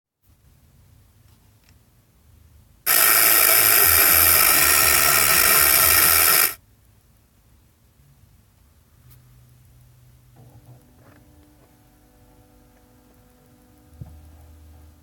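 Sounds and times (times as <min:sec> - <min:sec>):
loud white noise from speaker: 0:02.9 - 0:06.6.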